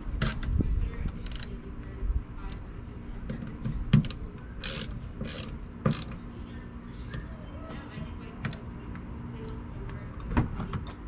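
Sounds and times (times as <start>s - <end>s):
hand ratchet clicking: 1.2s - 1.5s, 4.0s - 6.1s.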